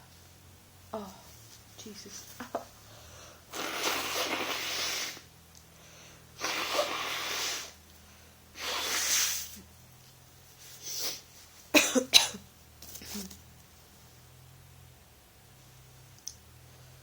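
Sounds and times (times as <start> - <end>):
hissing breaths: 2.8 - 9.6.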